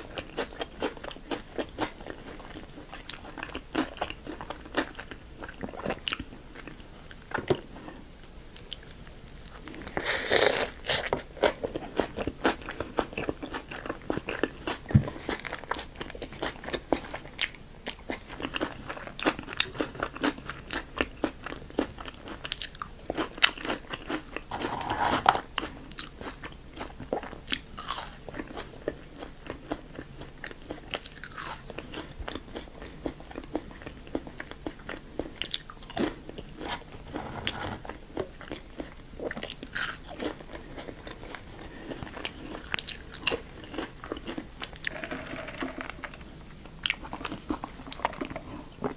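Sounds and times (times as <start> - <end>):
crunching bites and chewing: 8.6 - 48.9.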